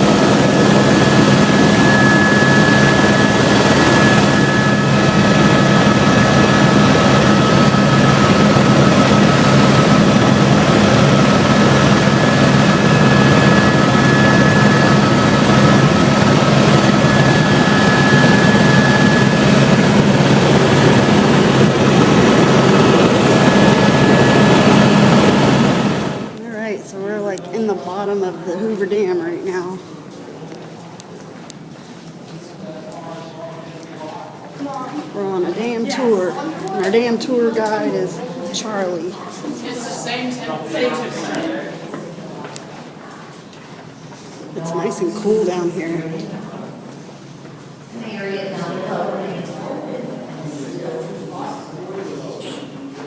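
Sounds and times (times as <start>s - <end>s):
helicopter in flight: 0.0s - 29.4s.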